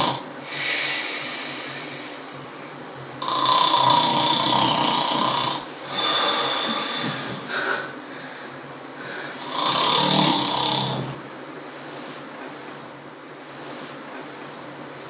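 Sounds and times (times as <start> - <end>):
man snoring loudly: 0.0 - 0.3, 3.2 - 7.9, 9.3 - 11.2.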